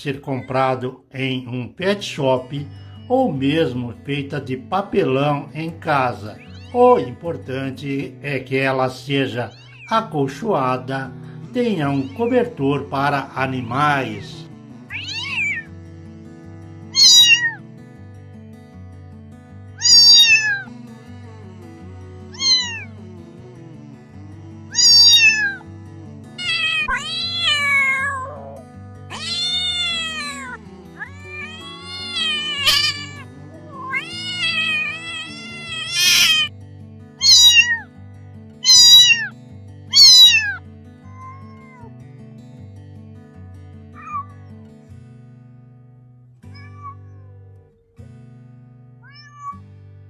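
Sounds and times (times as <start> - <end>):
cat meowing: 6.4 - 7.2, 9.4 - 10.1, 11.8 - 12.6, 14.0 - 15.8, 16.8 - 17.6, 19.8 - 21.6, 22.2 - 23.7, 24.3 - 25.7, 26.3 - 36.5, 37.2 - 37.9, 38.6 - 39.3, 39.9 - 41.9, 44.0 - 44.5, 46.5 - 47.3, 49.0 - 49.6.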